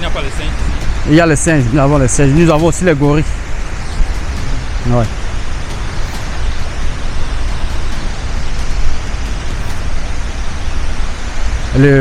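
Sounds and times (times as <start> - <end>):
waterfall roaring: 0.0 - 12.0.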